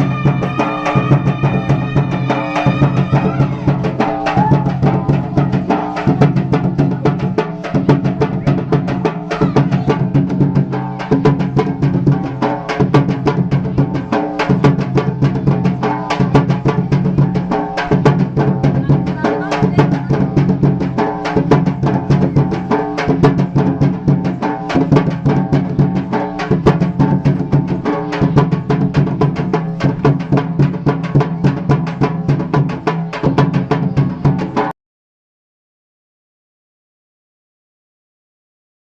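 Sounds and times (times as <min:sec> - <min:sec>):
steady held melody: 0:00.0 - 0:05.5
drums beating fast rhythm: 0:00.0 - 0:34.7.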